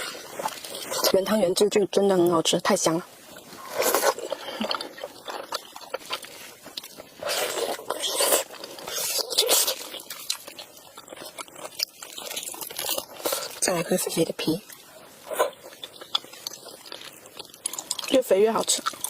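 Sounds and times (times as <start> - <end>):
person chewing: 0.0 - 1.2, 3.3 - 13.6, 14.6 - 19.0
crunchy bites: 3.6 - 13.6, 15.3 - 19.0.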